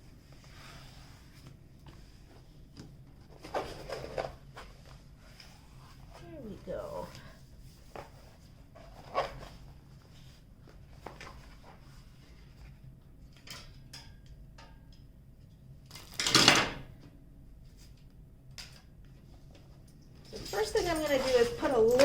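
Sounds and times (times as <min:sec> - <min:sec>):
scrape on a table: 0:00.4 - 0:01.5.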